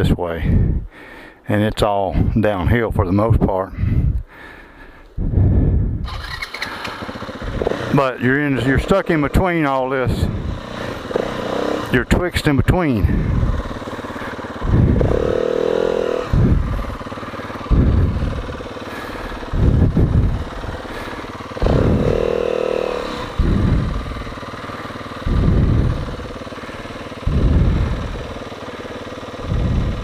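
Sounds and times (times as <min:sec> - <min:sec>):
off-road vehicle engine revving: 0:06.0 - 0:30.0.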